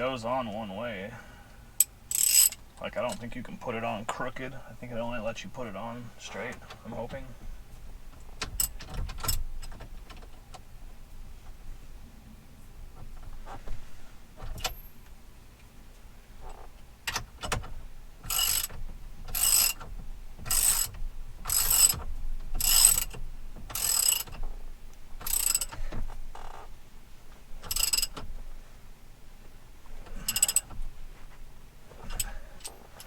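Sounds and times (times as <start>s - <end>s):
socket ratchet clicking: 1.8s - 2.6s, 18.3s - 19.9s, 20.5s - 20.9s, 21.5s - 22.0s, 22.6s - 24.4s, 25.2s - 25.8s, 27.6s - 28.2s, 30.3s - 30.8s.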